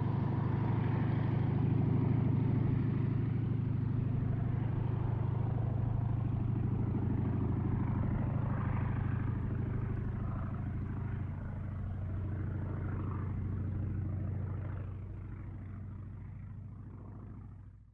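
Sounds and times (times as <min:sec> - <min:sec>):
low engine drone: 0:00.0 - 0:17.9
helicopter rotor beating: 0:01.4 - 0:17.4.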